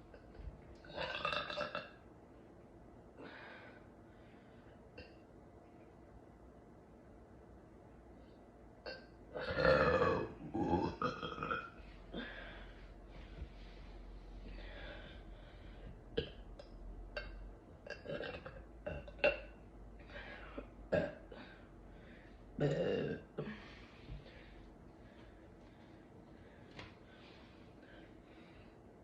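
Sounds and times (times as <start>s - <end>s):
woman burping: 0.8s - 2.0s, 8.8s - 12.4s, 16.2s - 19.6s, 20.6s - 21.6s, 22.6s - 23.6s.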